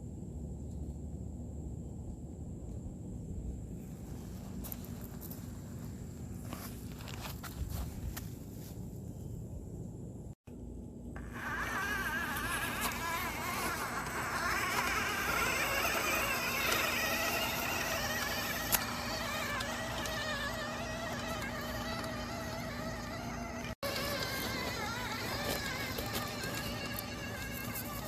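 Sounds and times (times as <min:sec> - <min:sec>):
steady low hum: 0:00.0 - 0:28.0
small electric motors whining: 0:11.0 - 0:28.0.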